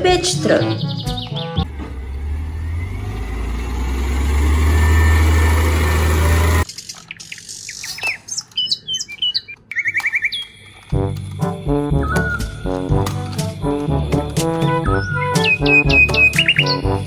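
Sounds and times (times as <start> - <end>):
garbage truck engine rumbling: 0.0 - 6.7, 10.9 - 17.0
birds chirping: 0.0 - 17.0.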